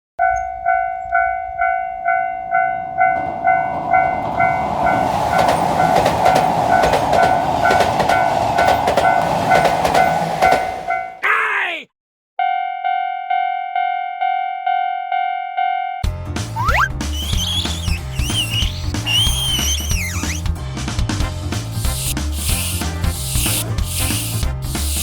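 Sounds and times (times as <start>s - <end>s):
railroad crossing bell ringing: 0.2s - 11.2s
train wheels clacking on rails: 2.6s - 11.2s, 17.1s - 20.4s, 21.7s - 25.0s
short falling-pitch sound: 16.5s - 20.4s.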